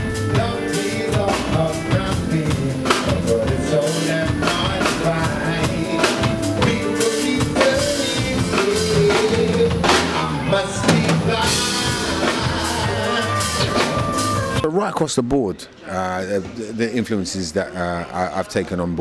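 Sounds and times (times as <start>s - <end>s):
drum kit hits: 0.0s - 14.4s
bass: 0.0s - 14.7s.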